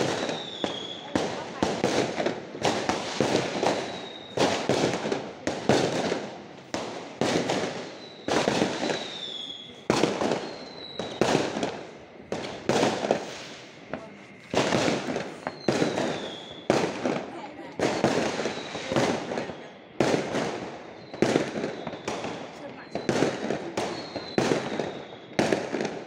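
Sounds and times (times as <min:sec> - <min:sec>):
fireworks bangs with crackle: 0:00.0 - 0:26.0
high whistles dipping in pitch: 0:08.0 - 0:11.2, 0:12.2 - 0:16.7.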